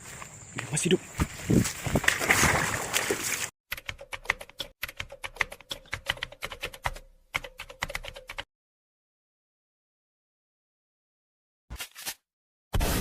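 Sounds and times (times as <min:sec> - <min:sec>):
outdoor field sound: 0:00.0 - 0:08.4
keyboard typing clicks: 0:03.7 - 0:08.5.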